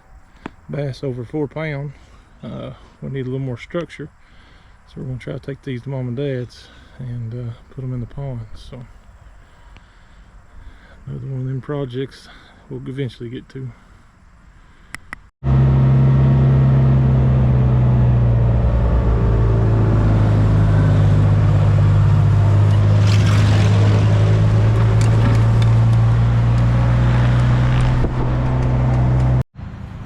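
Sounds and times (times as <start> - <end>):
vehicle engine running: 15.4 - 30.0.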